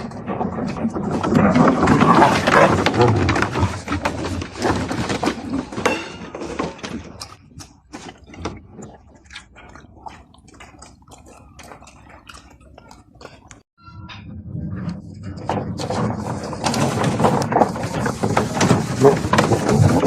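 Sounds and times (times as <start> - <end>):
tiger cubs feeding wet smacks: 7.2 - 13.6.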